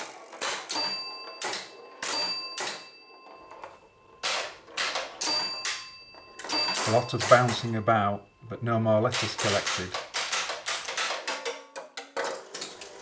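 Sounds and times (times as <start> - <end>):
pinball ball clattering hits: 0.3 - 7.8, 9.1 - 13.0
bell-like ringing tone: 0.7 - 9.9.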